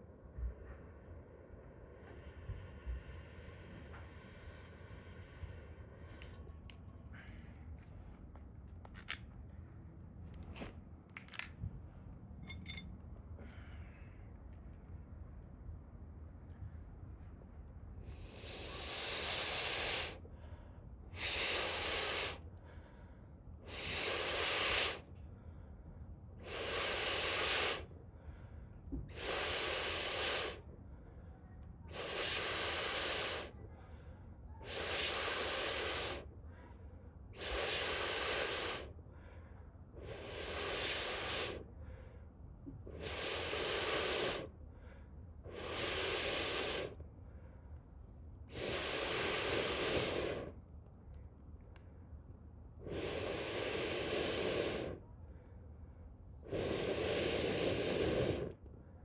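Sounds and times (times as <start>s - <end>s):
air puffs blown onto fire: 0.0s - 8.3s, 16.5s - 20.5s, 21.1s - 22.8s, 23.6s - 25.2s, 26.4s - 28.3s, 28.9s - 30.9s, 31.8s - 33.9s, 34.6s - 36.6s, 37.4s - 42.0s, 42.7s - 44.6s, 45.4s - 47.1s, 48.4s - 50.7s, 52.7s - 55.4s, 56.3s - 58.8s.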